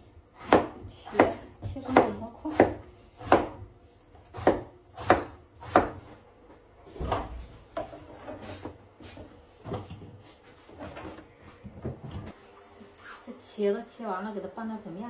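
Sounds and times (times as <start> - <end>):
knife chopping on cutting board: 0.3 - 6.2.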